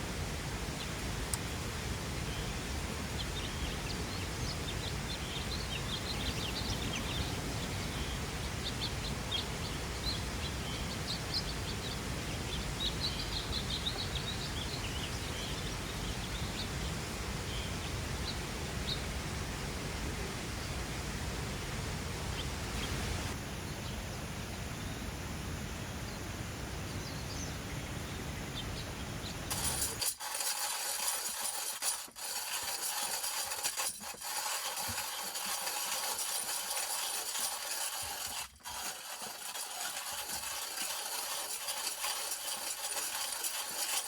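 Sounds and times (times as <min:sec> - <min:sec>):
small birds chirping: 0:02.2 - 0:19.1, 0:26.0 - 0:30.0.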